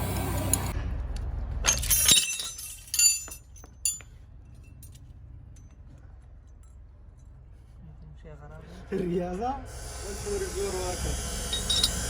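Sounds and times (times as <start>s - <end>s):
metal pieces clinking: 1.7s - 4.0s, 11.5s - 12.0s.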